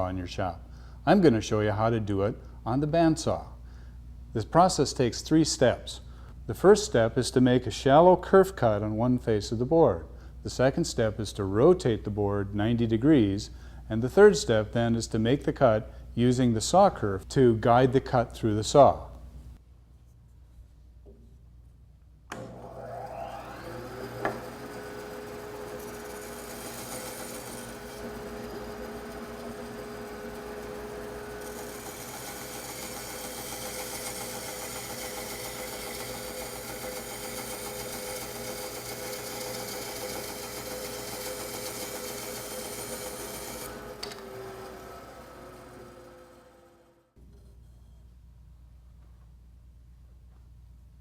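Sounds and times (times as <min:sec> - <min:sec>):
bandsaw motor running: 0:22.4 - 0:47.1
saw blade cutting wood: 0:23.3 - 0:46.7.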